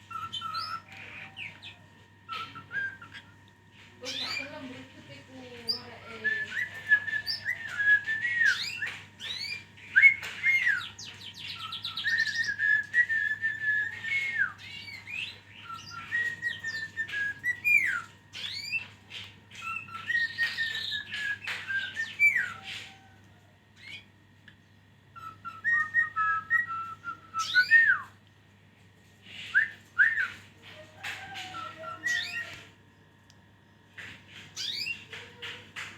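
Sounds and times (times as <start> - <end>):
songbird singing: 0.0 - 23.2, 23.8 - 28.1
faint steady hum: 0.0 - 35.9.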